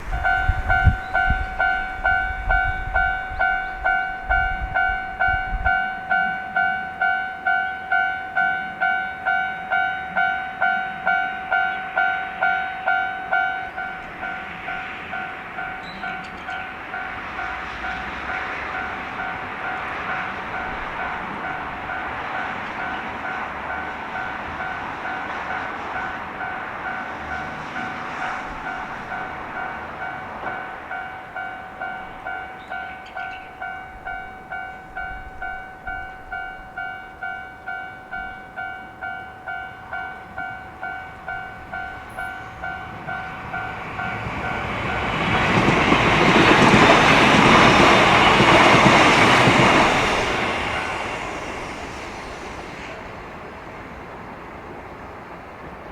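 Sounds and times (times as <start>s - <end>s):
train passing: 0.0s - 55.9s
level crossing bell ringing: 28.7s - 45.1s.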